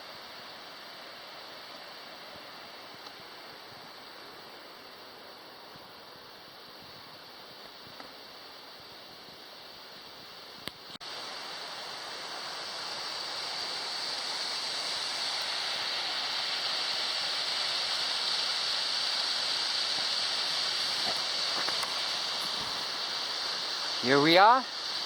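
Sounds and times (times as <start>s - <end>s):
waterfall rushing: 11.0s - 25.0s.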